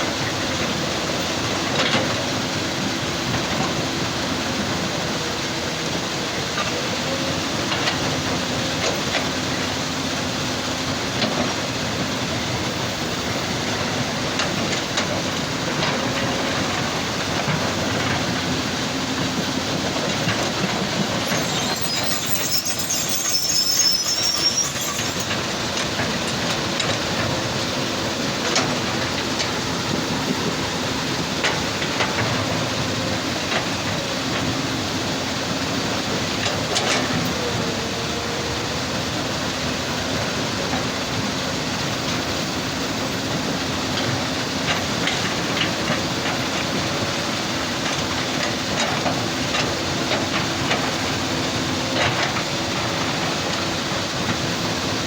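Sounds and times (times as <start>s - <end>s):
diesel machinery hum: 0.0s - 55.0s
high metallic squeal: 21.0s - 26.4s.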